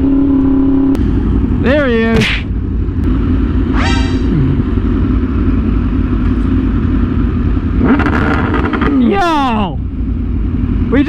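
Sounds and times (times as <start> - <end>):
motorcycle engine rumbling: 0.0 - 11.0.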